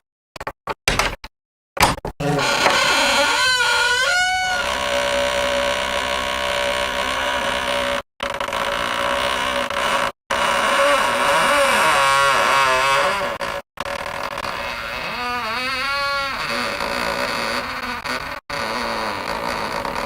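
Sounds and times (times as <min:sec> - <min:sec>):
door hinges creaking: 0:00.9 - 0:01.2, 0:01.8 - 0:20.0.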